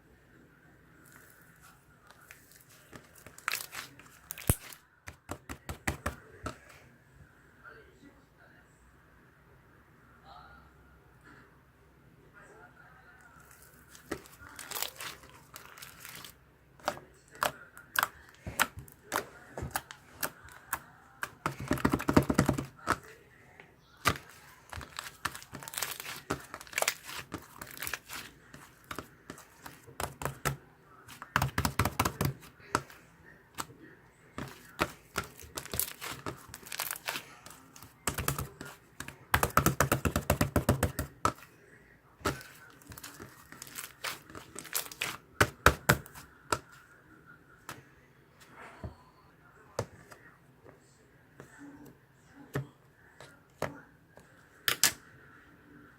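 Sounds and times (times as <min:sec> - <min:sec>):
paper or plastic crinkling: 0:01.1 - 0:04.8, 0:13.5 - 0:17.4, 0:24.1 - 0:32.9, 0:34.4 - 0:40.3, 0:42.2 - 0:45.2.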